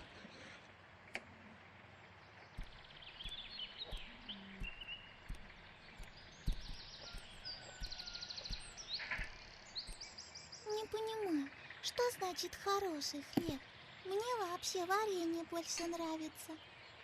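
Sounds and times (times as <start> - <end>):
birds chirping and trilling: 0.0 - 17.0
soft knocks: 2.6 - 10.1.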